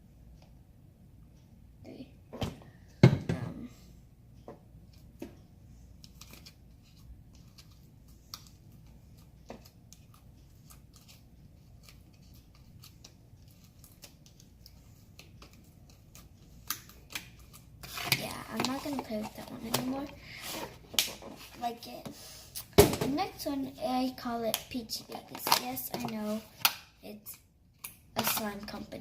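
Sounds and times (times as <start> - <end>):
low room hum: 0.0 - 29.0.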